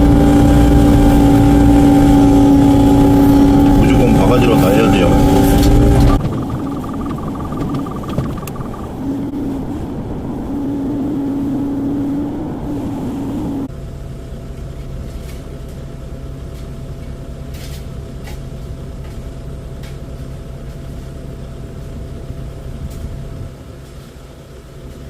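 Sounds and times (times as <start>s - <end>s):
diesel engine droning: 0.0s - 13.7s
thin steady whine: 0.0s - 13.7s
faint clicks: 6.1s - 8.9s.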